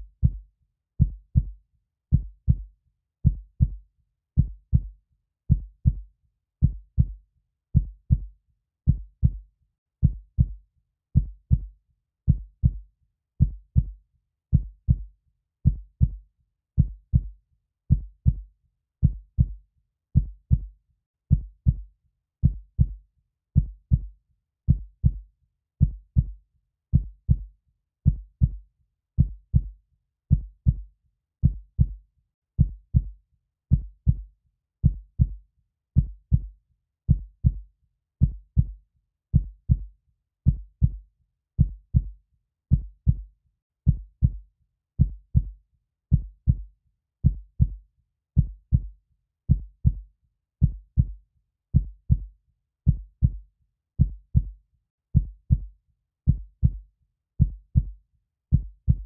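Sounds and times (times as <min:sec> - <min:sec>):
heartbeat thumps: 0:34.8 - 0:35.4, 0:36.0 - 0:36.5, 0:40.5 - 0:41.0, 0:45.0 - 0:45.5, 0:46.1 - 0:46.6, 0:47.2 - 0:47.8, 0:50.6 - 0:51.2, 0:51.8 - 0:52.3, 0:52.9 - 0:53.4, 0:54.0 - 0:54.5, 0:55.2 - 0:55.7, 0:56.3 - 0:56.8, 0:57.4 - 0:57.9, 0:58.5 - 0:59.0.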